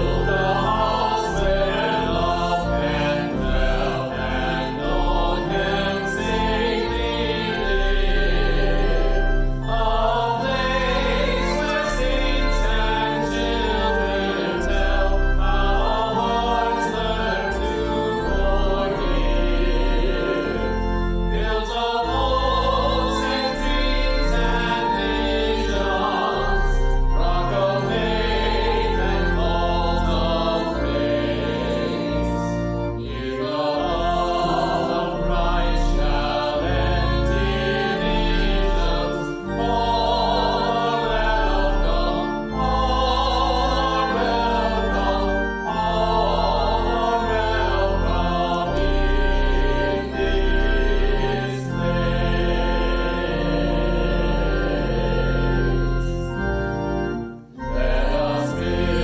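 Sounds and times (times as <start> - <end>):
choir singing a hymn: 0.0 - 59.0
instrumental sustained chords: 0.0 - 59.0.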